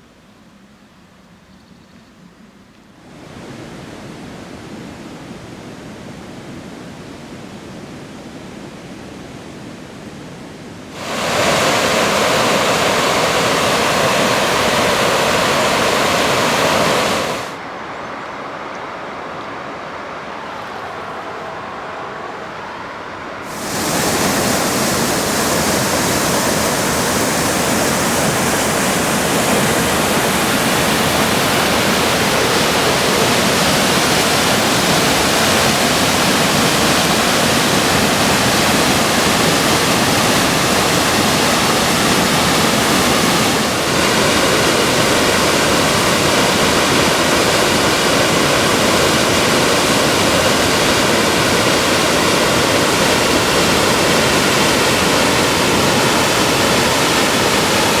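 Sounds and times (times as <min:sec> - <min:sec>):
waterfall rushing: 0:10.9 - 0:17.6, 0:23.4 - 0:58.0.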